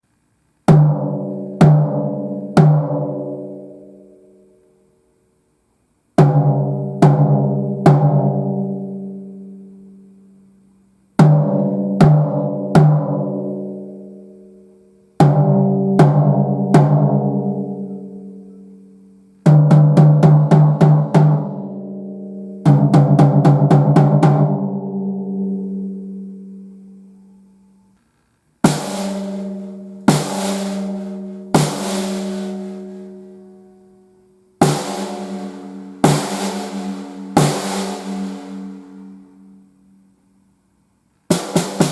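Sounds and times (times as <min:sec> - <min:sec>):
snare drum hits ringing: 0:28.6 - 0:33.1, 0:34.6 - 0:39.2, 0:41.3 - 0:41.9.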